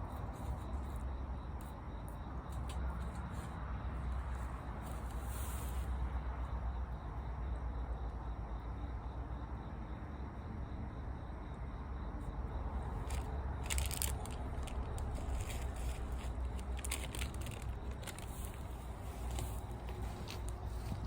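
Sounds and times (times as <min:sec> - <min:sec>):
steady low rumble: 0:12.3 - 0:21.0.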